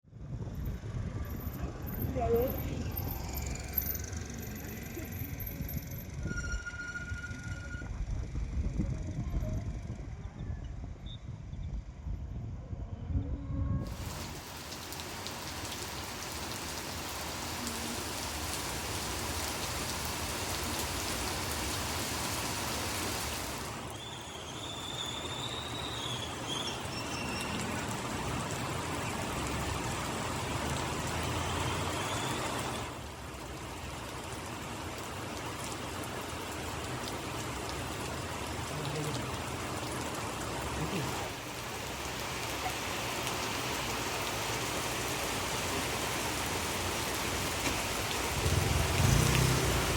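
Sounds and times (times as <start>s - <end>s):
heavy rain falling: 13.8s - 49.9s
high chirping whistle: 24.0s - 27.5s.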